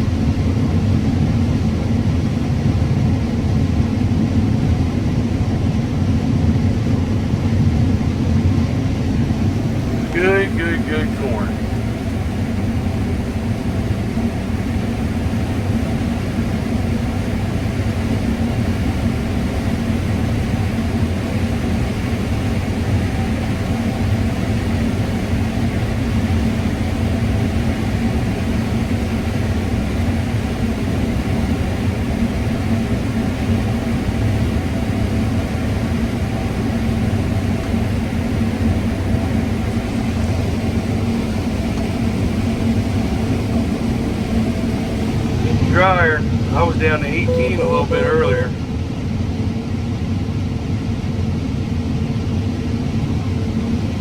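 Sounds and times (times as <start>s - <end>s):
combine harvester running: 8.9s - 19.8s, 29.8s - 48.7s.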